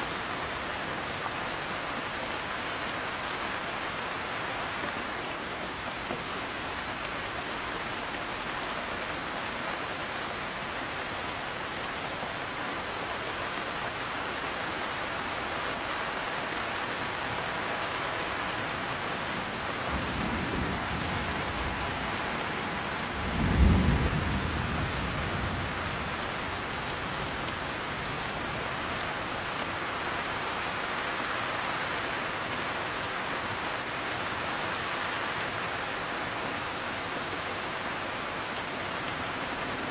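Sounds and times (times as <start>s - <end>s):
heavy rain: 0.0s - 39.9s
thunder rumbling: 19.9s - 26.2s.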